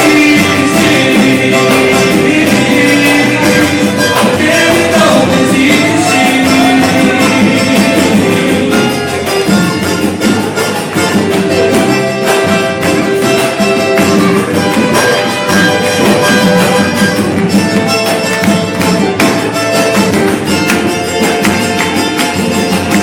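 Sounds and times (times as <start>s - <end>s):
plucked strings: 0.0s - 23.0s
tambourine beat: 0.0s - 23.0s.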